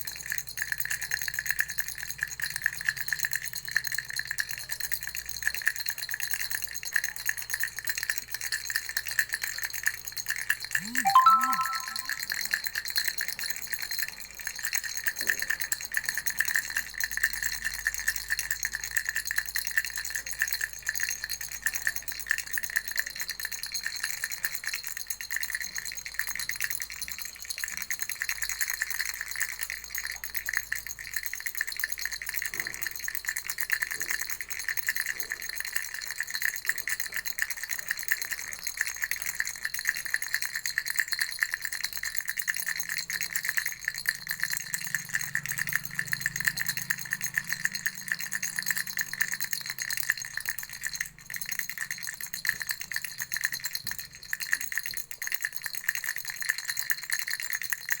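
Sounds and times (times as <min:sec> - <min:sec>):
baby rattle shaken: 0:00.0 - 0:12.1, 0:13.8 - 0:58.0.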